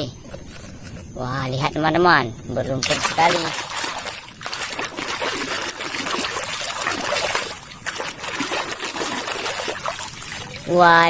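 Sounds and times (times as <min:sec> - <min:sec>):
water splashing on plastic toy: 0:02.8 - 0:11.0.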